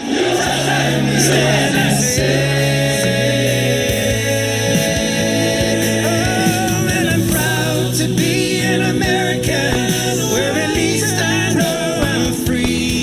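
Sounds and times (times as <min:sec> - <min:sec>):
choir singing over speakers: 0:00.0 - 0:13.0
fireworks popping and banging: 0:06.0 - 0:13.0.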